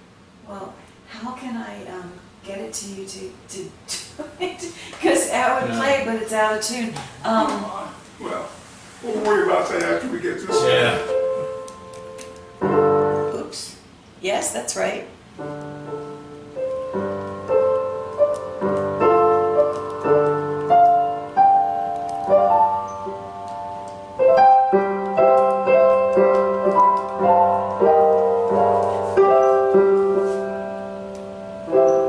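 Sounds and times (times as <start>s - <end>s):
piano chords and melody: 10.3s - 13.5s, 15.3s - 32.0s.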